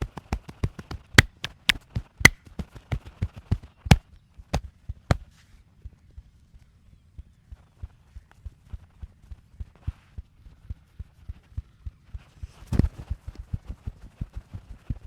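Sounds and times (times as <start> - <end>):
percussive massage strikes: 1.2 - 2.4.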